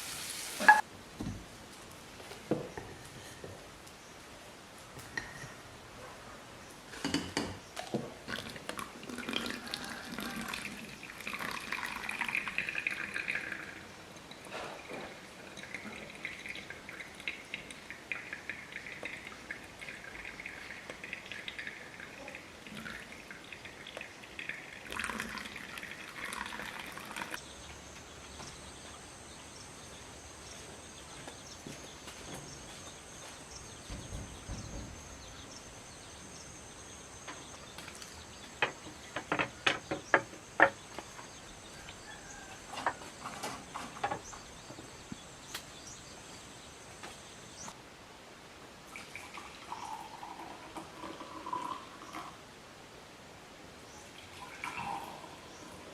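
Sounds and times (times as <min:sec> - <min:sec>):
kitchenware clinking and knocking: 0:07.0 - 0:07.6, 0:38.6 - 0:40.8.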